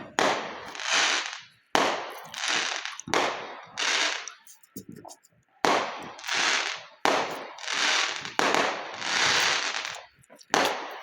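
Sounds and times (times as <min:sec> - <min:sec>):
firework bangs: 0:00.0 - 0:04.5, 0:05.6 - 0:11.0
hissing crackling firework spray: 0:00.0 - 0:11.0.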